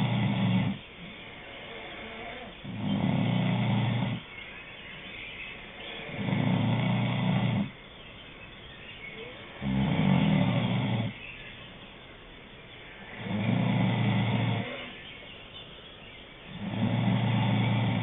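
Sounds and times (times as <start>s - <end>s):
person snoring: 0.0s - 4.2s, 6.1s - 7.7s, 9.6s - 11.2s, 13.1s - 14.9s, 16.6s - 18.0s
quiet hiss: 0.0s - 18.0s.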